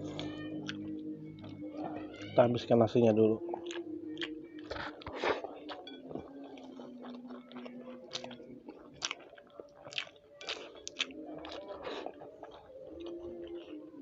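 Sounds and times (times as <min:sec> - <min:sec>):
chewing rice: 0:00.0 - 0:02.4, 0:03.1 - 0:14.0.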